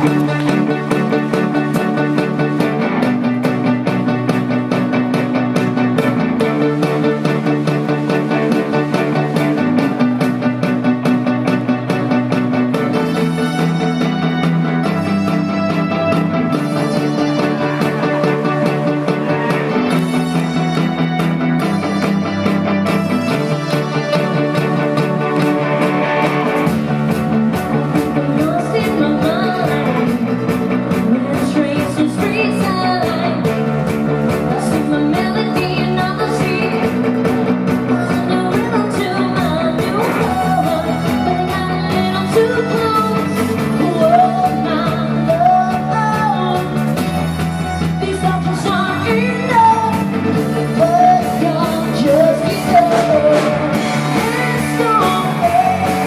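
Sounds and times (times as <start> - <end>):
live rock band playing: 0.0 - 56.0
lead vocal singing: 27.8 - 33.6, 47.8 - 56.0.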